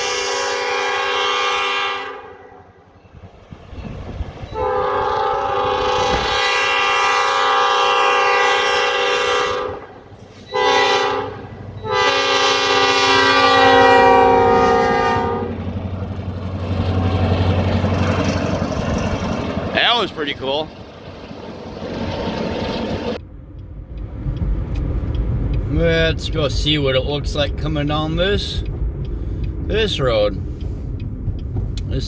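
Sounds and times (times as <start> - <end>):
locomotive air horn blasts: 0.0 - 3.0, 4.5 - 15.7
passing train rumble: 0.0 - 32.0.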